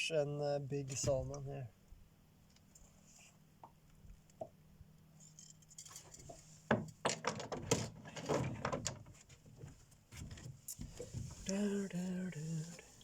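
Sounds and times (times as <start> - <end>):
faint low hum: 0.0 - 7.0, 7.6 - 13.0.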